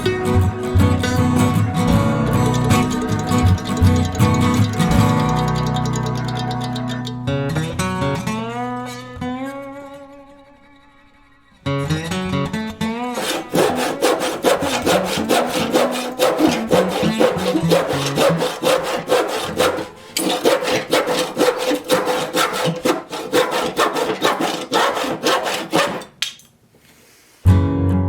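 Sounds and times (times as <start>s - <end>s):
hand saw cutting wood: 13.2s - 26.2s.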